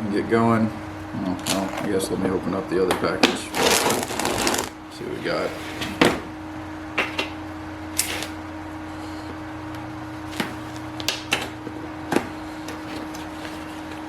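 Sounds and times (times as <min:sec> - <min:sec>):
steady low hum: 0:00.0 - 0:14.0
package being handled: 0:12.6 - 0:14.0.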